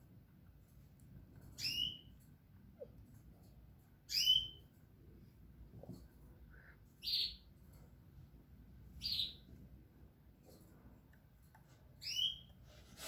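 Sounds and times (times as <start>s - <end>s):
bird chirping: 1.5s - 2.9s, 4.0s - 4.8s, 6.5s - 7.6s, 8.9s - 9.6s, 11.9s - 12.6s.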